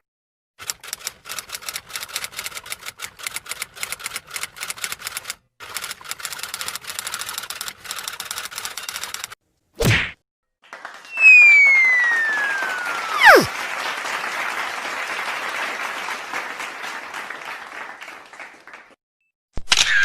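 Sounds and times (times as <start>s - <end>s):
rapid irregular clicking: 0.6s - 9.4s.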